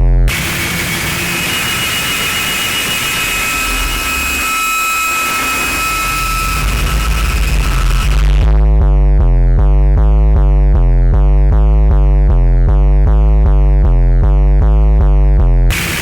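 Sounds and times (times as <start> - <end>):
two-pitch electronic buzz: 0.0 - 16.0
loud rushing noise: 0.3 - 8.6.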